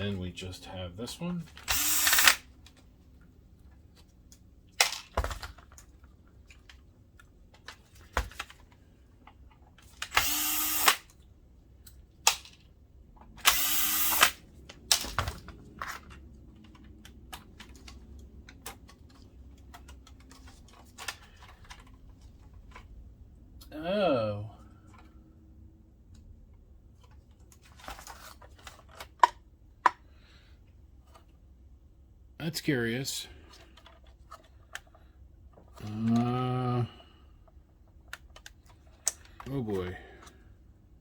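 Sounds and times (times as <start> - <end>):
electric screwdriver spinning: 1.6 - 2.5, 10.0 - 11.1, 13.4 - 14.4.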